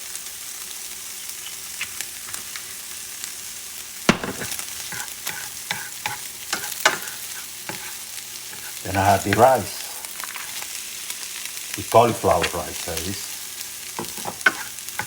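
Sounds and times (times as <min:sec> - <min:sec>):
food sizzling in oil: 0:00.0 - 0:15.0
utensil scraping and tapping pan: 0:04.2 - 0:08.7, 0:14.0 - 0:15.0.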